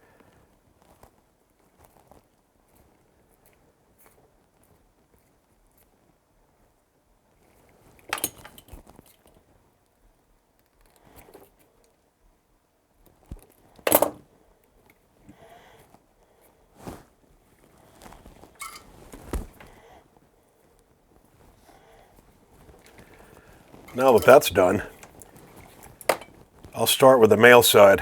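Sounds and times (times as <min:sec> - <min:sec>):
tools clicking and knocking on workbench: 0:26.0 - 0:26.3.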